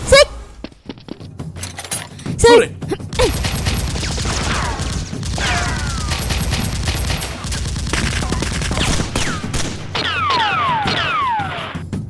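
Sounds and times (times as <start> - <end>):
rapid gunfire: 3.1 - 11.8.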